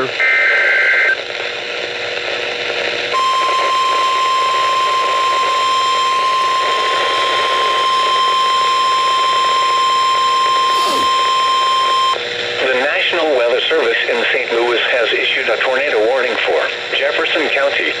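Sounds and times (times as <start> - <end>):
steady warning alarm tone: 3.2 - 12.2.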